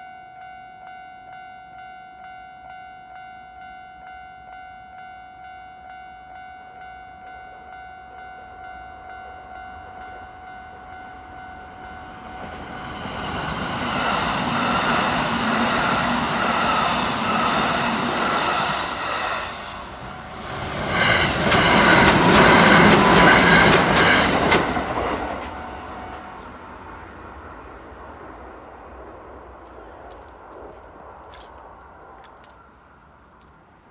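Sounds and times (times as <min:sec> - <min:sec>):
level-crossing warning bell: 0:00.0 - 0:26.8
electric trains passing: 0:00.4 - 0:33.9
wheels clacking over rail joints: 0:11.7 - 0:26.5.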